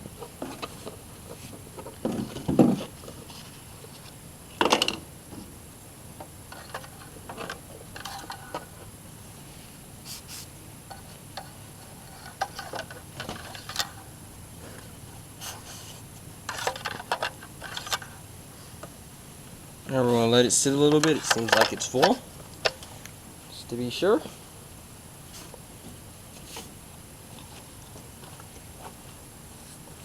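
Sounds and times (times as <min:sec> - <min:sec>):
clicks and knocks of handling: 0:20.9 - 0:23.2.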